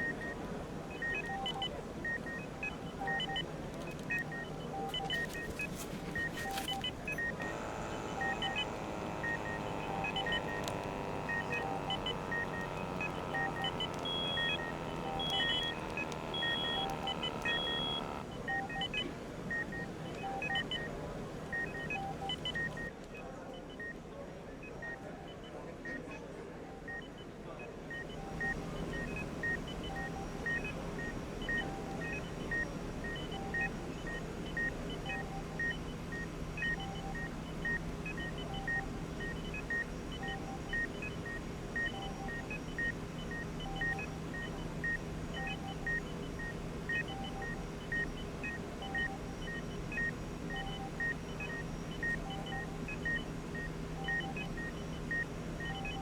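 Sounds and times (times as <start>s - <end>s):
low equipment hum: 3.1s - 22.9s
higher beeps in groups: 4.1s - 20.9s, 28.0s - 56.0s
short high medical beeps: 4.8s - 18.2s.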